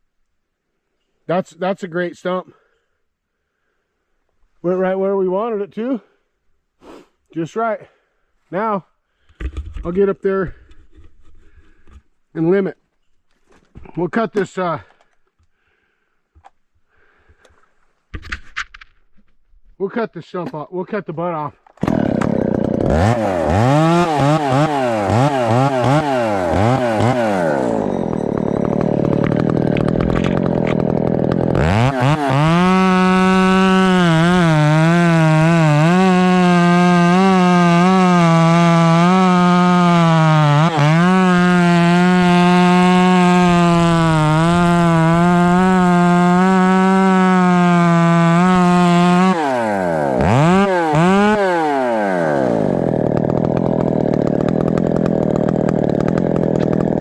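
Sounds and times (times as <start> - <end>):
chainsaw cutting log: 21.7 - 57.0.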